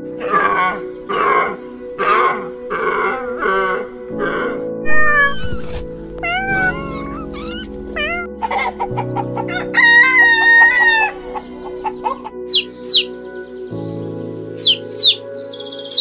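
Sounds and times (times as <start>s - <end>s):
background music: 0.0s - 16.0s
chickens clucking: 0.2s - 13.1s
rooster crowing: 8.4s - 11.2s.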